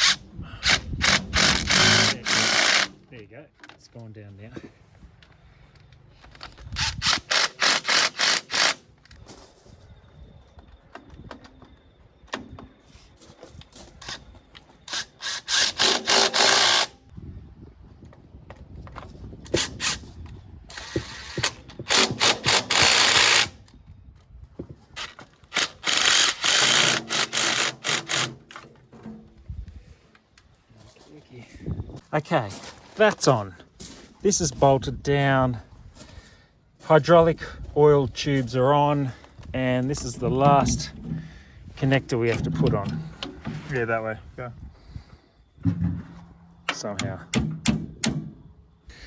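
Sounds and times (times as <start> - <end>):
ratchet wrench clicking: 0.0 - 3.0, 6.8 - 8.8, 14.9 - 16.9, 20.7 - 23.5, 25.5 - 28.3
metal handling: 28.2 - 31.0, 39.2 - 44.1, 45.5 - 48.6.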